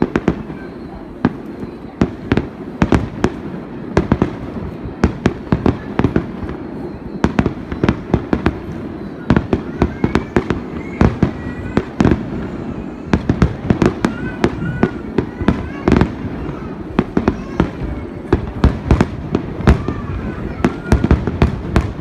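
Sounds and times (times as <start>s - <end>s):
fireworks bangs: 0.0s - 22.0s
faint rising whistles: 6.4s - 9.4s.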